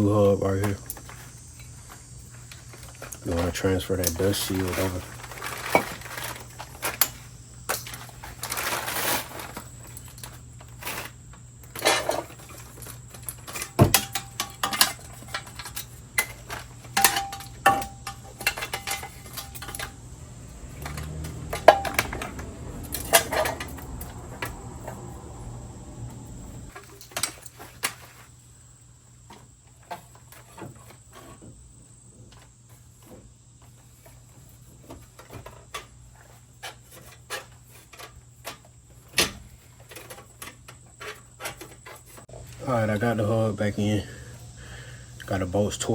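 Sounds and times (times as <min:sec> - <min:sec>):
metal tools clinking: 0:00.0 - 0:25.3, 0:33.8 - 0:43.4.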